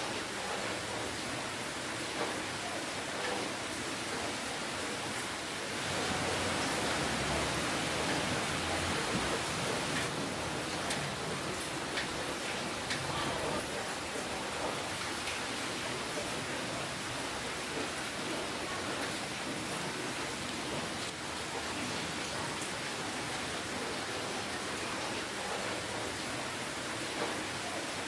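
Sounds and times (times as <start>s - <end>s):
steady rain hiss: 0.0s - 28.0s
raindrop ticks: 5.9s - 23.0s.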